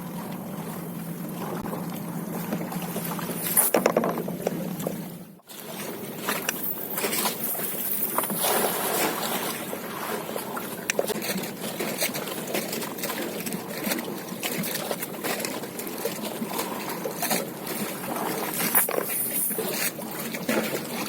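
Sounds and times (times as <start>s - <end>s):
water trickling and splashing: 0.0s - 21.0s
knocks on boat: 3.7s - 5.0s.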